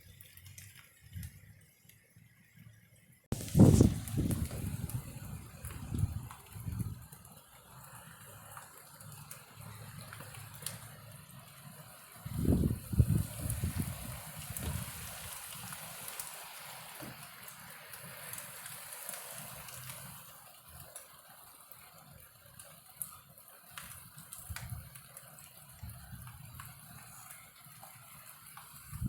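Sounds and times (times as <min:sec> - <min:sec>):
raindrops ticking close by: 0:00.0 - 0:29.0
wind gusts on microphone: 0:03.3 - 0:07.0, 0:12.3 - 0:15.3
heavy rain pouring: 0:03.3 - 0:29.0.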